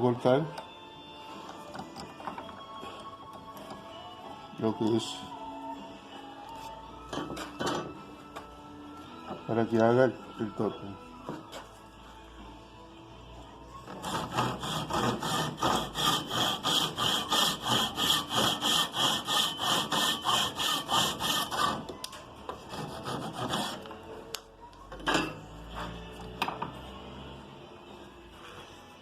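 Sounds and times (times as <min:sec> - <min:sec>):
hand saw cutting wood: 0:13.9 - 0:22.0, 0:22.7 - 0:23.9.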